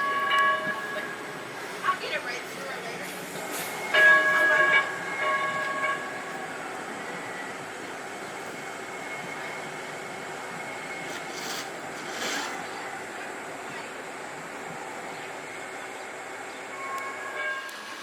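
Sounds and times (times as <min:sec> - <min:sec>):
train horn blasts: 0:00.0 - 0:02.0, 0:03.8 - 0:06.5, 0:16.7 - 0:18.0
train running: 0:00.0 - 0:18.0.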